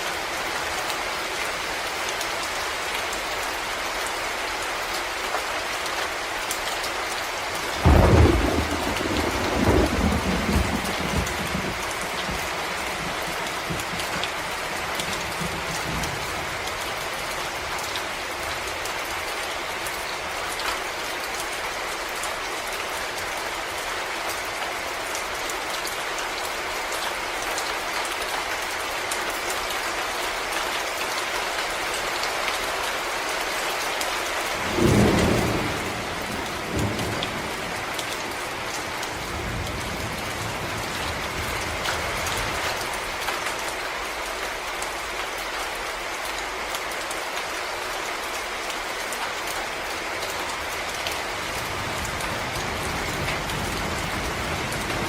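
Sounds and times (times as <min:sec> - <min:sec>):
rain falling on leaves: 0:00.0 - 0:55.0
raindrops ticking: 0:34.6 - 0:43.7.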